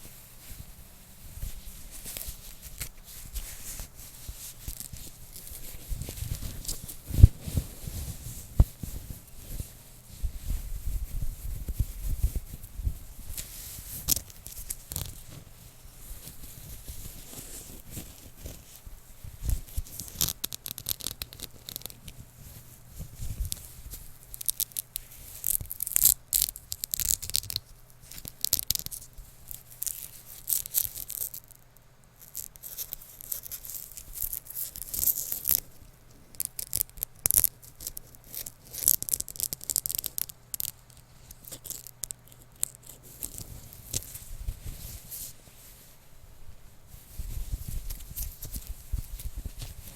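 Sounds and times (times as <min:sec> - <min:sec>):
rough material scratching microphone: 0:01.4 - 0:15.6.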